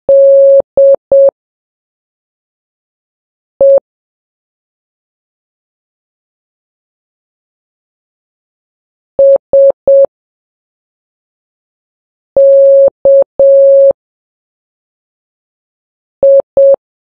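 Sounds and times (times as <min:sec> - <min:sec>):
morse code beeps: 0:00.1 - 0:01.3, 0:09.2 - 0:10.1, 0:12.4 - 0:13.9, 0:16.2 - 0:16.8.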